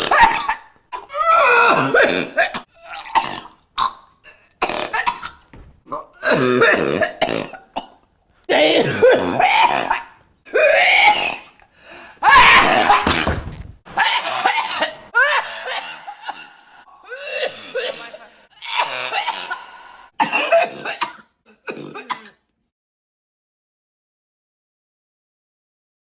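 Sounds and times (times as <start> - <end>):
woman coughing: 6.2 - 10.0, 20.2 - 22.4.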